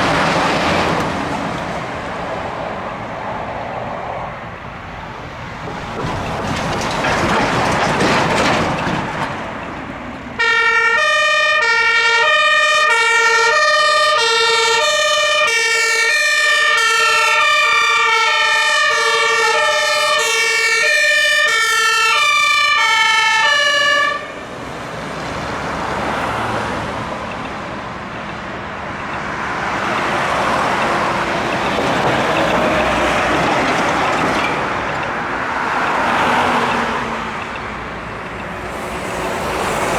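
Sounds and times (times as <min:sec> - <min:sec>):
vehicles driving past: 0:00.0 - 0:39.9
two-tone fire engine siren: 0:10.4 - 0:24.7.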